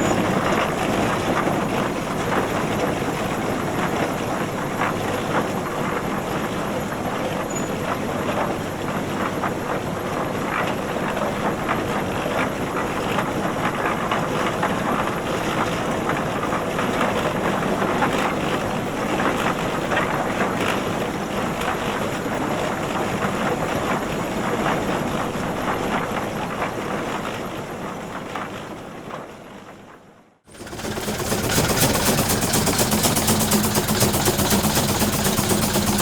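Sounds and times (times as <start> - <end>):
tractor engine running: 0.0 - 4.0, 30.5 - 36.0.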